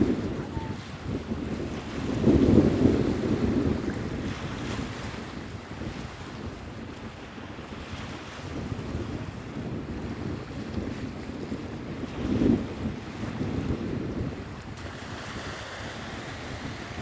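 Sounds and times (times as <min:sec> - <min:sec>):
wind buffeting the microphone: 0:00.0 - 0:17.0
sea waves washing in: 0:12.8 - 0:17.0.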